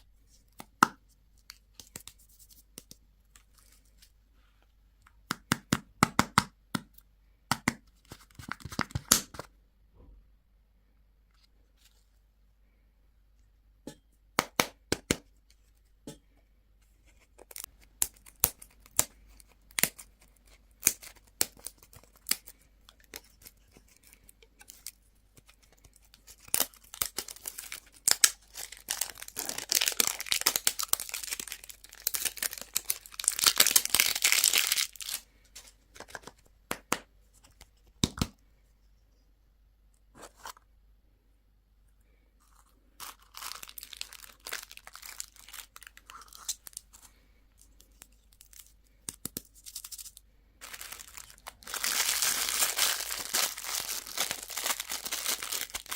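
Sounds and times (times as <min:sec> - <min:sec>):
candy wrapper crinkling and tearing: 0:17.3 - 0:35.3, 0:42.4 - 0:55.9.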